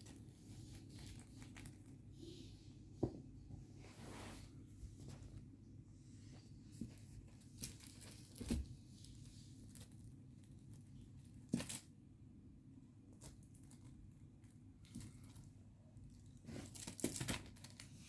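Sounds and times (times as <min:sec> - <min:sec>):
cats rustling: 0:00.0 - 0:11.9, 0:13.0 - 0:18.0
low steady hum: 0:00.0 - 0:17.9.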